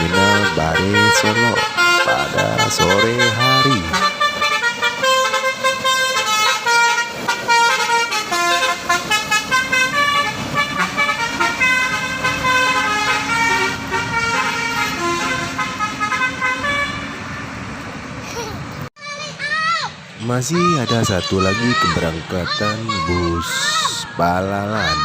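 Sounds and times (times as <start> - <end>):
musical bus air horn: 0.0 - 17.5.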